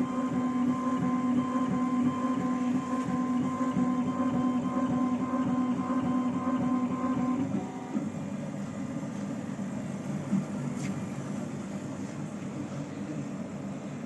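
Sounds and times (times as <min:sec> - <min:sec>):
pitched motor whine: 0:00.0 - 0:08.3
steady machine hum: 0:00.0 - 0:14.0.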